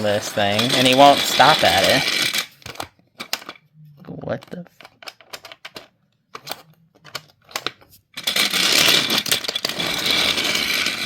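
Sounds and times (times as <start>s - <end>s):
toy train whirring on plastic track: 0.0s - 3.6s, 7.5s - 11.0s.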